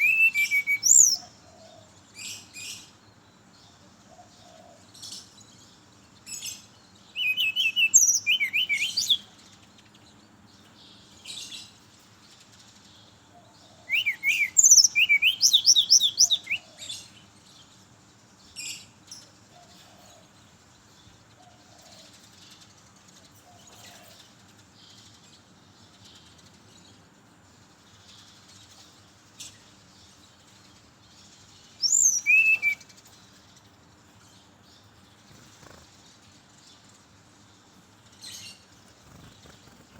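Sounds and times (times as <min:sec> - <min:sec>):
bird singing high whistles: 0:00.0 - 0:01.2, 0:07.2 - 0:09.3, 0:13.9 - 0:16.6, 0:31.8 - 0:32.9.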